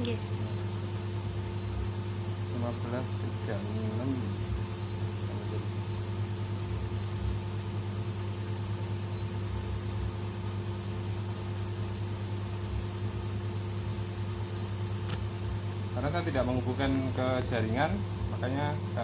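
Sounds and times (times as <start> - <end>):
low machine hum: 0.0 - 19.0.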